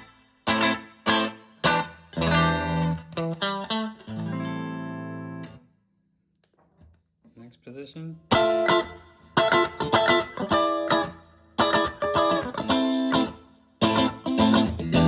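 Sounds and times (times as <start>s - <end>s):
electric guitar chords: 0.0s - 5.6s, 8.3s - 15.0s.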